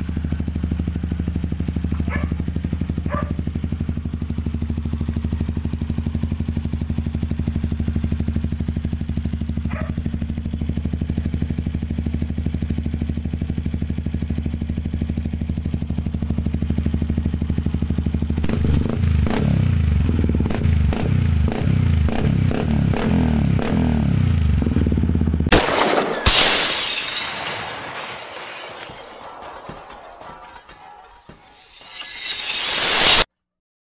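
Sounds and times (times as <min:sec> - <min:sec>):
motorcycle engine idling and revving: 0:00.0 - 0:25.5
loud crashing burst: 0:25.5 - 0:30.8.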